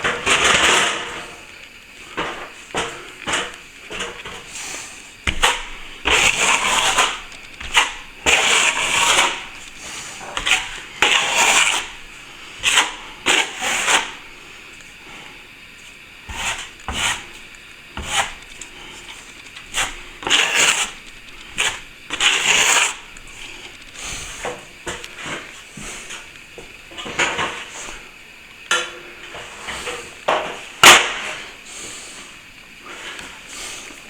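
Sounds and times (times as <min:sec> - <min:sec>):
metal tools scraping plaster: 0:02.4 - 0:14.3, 0:16.3 - 0:17.4, 0:18.0 - 0:25.5.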